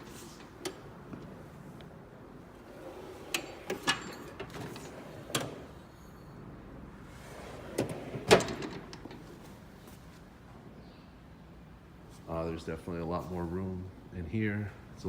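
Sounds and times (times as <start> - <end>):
metal drawers sliding: 0.0 - 1.8, 2.4 - 6.2, 7.0 - 9.8
drawer clicks and clunks: 2.6 - 5.8, 7.3 - 9.6.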